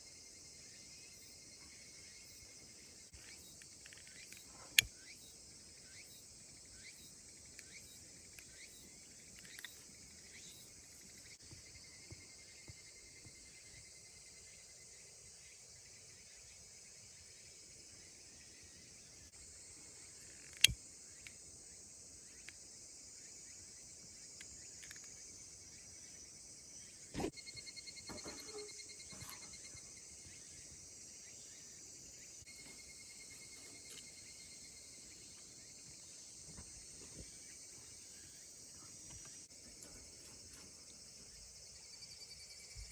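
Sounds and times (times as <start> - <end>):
insects chirping: 0.0 - 42.9.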